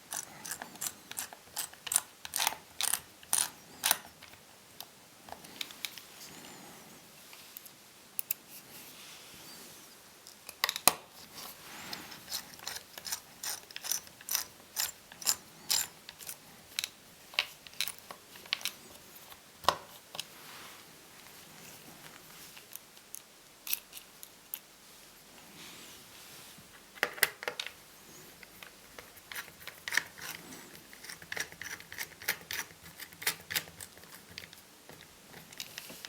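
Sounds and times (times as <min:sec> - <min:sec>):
hand tools clicking: 0:12.3 - 0:16.9.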